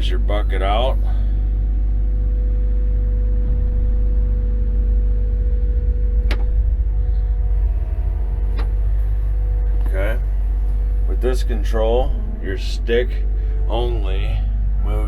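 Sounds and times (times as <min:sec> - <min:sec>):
excavator diesel engine running: 0:00.0 - 0:15.0
sharp click: 0:06.2 - 0:06.6.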